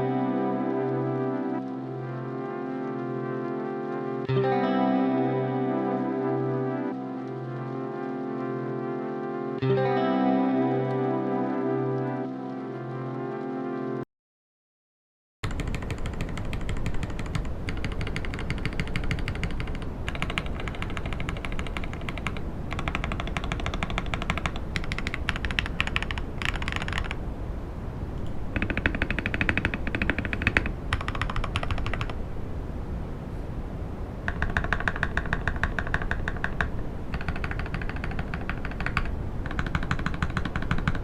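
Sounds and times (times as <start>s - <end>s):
mechanical keyboard typing: 15.4s - 27.2s, 28.6s - 32.2s, 34.3s - 41.0s.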